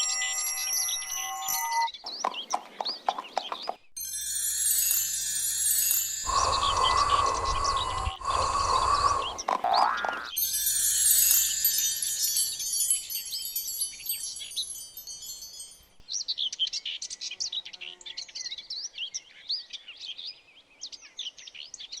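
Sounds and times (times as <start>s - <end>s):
tinkling chime shimmer: 0.0s - 2.0s, 4.0s - 9.3s, 10.3s - 16.0s
songbirds chirping: 0.0s - 4.0s, 6.3s - 10.4s, 11.4s - 22.0s.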